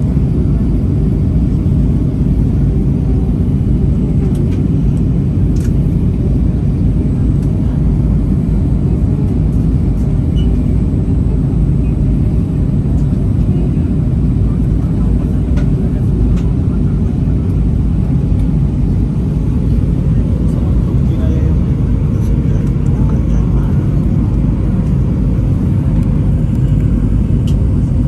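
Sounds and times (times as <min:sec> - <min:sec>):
airplane cabin engine rumble: 0:00.0 - 0:28.0.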